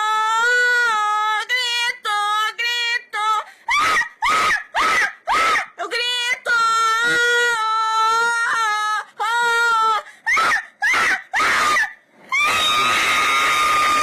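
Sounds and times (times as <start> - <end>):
woman screaming: 3.7 - 5.8, 6.5 - 14.0.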